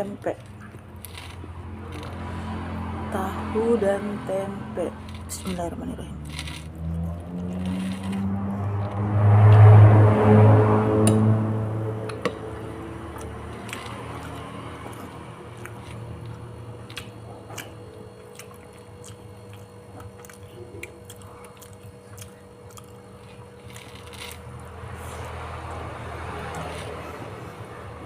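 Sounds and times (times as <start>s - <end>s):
steady low hum: 0.0s - 28.0s
chewing food: 12.7s - 27.5s.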